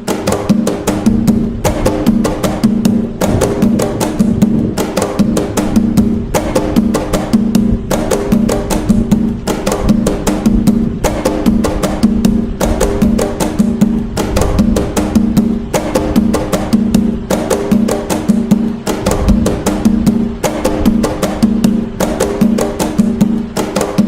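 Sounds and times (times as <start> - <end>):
deep drum tone: 0.0 - 24.0
hand drums playing fast rhythm: 0.0 - 24.0.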